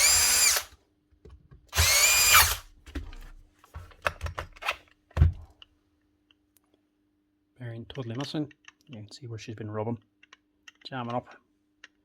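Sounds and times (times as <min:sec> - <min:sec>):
grinder motor whining: 0:00.0 - 0:00.7, 0:01.8 - 0:02.6.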